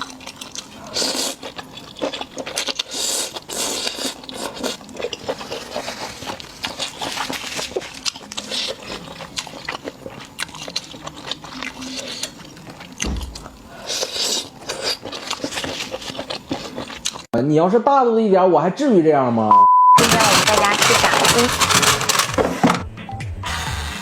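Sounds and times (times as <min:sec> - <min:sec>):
crunchy chewing: 0:00.0 - 0:17.3
low thump: 0:13.0 - 0:13.5.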